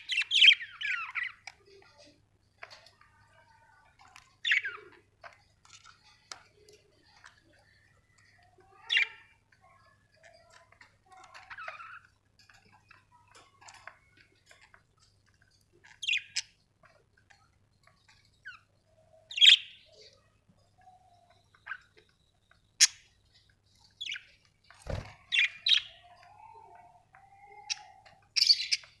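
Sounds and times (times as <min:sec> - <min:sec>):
budgerigars chirping: 0:00.1 - 0:01.4.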